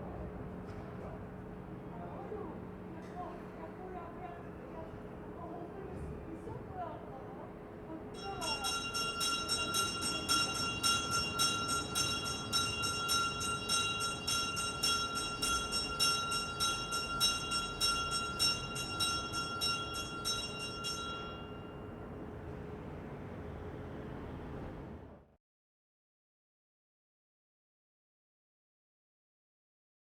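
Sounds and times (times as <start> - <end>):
church bell ringing rapidly: 8.2 - 22.0.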